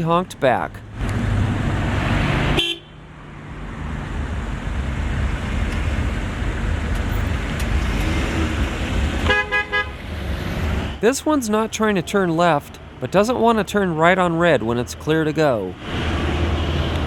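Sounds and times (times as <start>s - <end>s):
road traffic: 0.0s - 17.0s
car horn: 2.5s - 3.0s, 9.2s - 10.2s.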